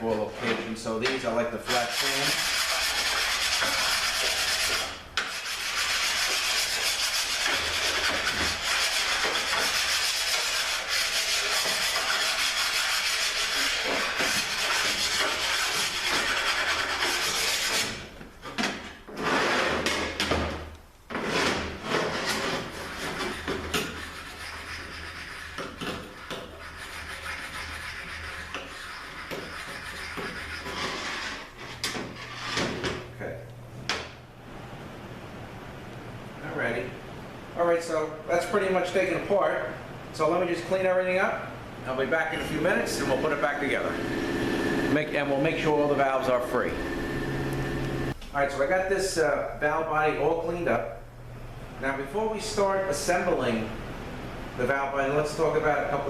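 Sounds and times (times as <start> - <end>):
metal part being sanded: 1.7 - 18.0, 21.2 - 32.6.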